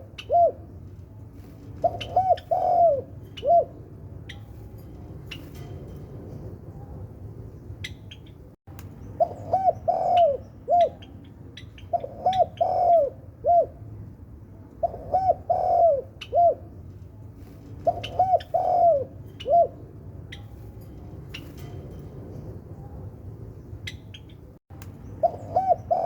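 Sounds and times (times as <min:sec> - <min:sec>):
dove cooing: 0:00.0 - 0:00.8, 0:01.7 - 0:03.9, 0:09.2 - 0:13.9, 0:14.8 - 0:16.8, 0:17.8 - 0:19.9, 0:25.2 - 0:26.0.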